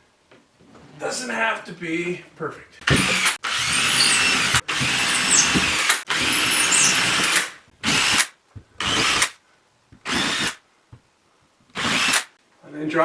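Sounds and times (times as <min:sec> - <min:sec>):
power drill running: 0:02.9 - 0:09.3, 0:10.0 - 0:10.6, 0:11.8 - 0:12.3.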